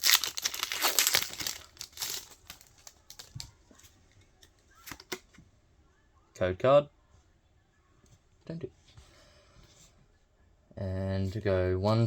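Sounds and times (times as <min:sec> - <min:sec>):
foil wrapper crinkling and tearing: 0:00.0 - 0:03.6.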